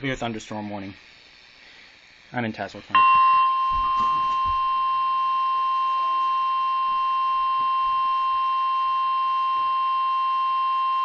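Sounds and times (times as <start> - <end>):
weather radio alarm tone: 3.0 - 11.0.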